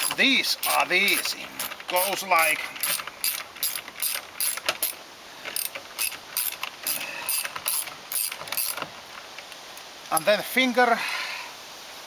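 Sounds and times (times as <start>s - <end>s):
ratchet wrench clicking: 0.0s - 8.8s.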